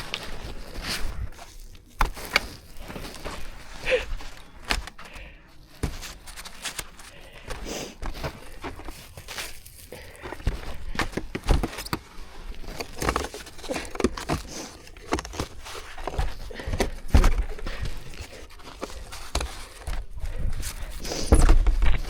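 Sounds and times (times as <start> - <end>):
footsteps crunching in snow: 0.0 - 11.2.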